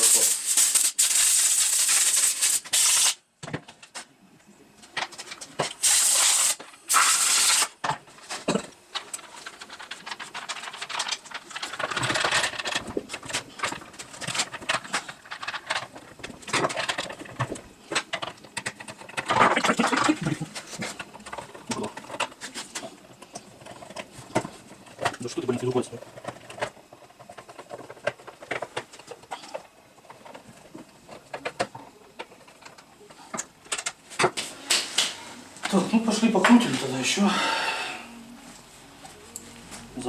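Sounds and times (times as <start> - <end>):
short bursts of hiss: 0.0 - 3.2, 5.8 - 7.7
tools and parts clattering: 6.9 - 34.5.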